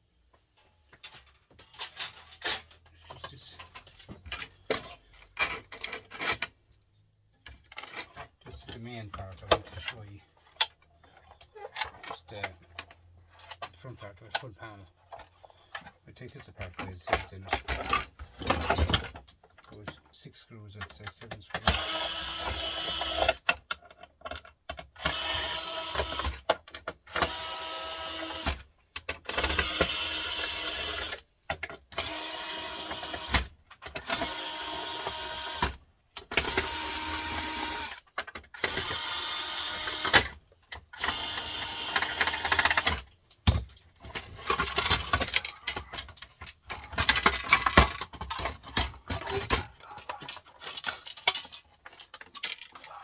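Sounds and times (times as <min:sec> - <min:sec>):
plastic parts clattering: 0:00.4 - 0:53.0
power drill unscrewing screws: 0:31.9 - 0:53.0.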